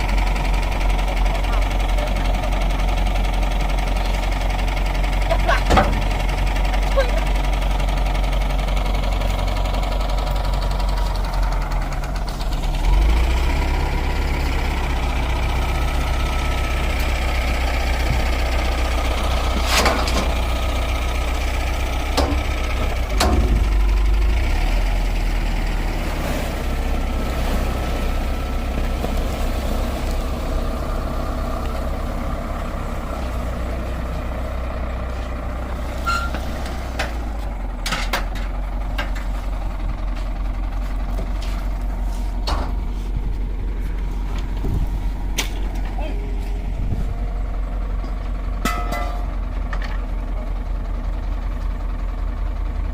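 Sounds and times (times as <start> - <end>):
hand tractor engine droning: 0.0 - 52.9
sharp knocks or clanks: 23.2 - 23.9, 48.6 - 49.9.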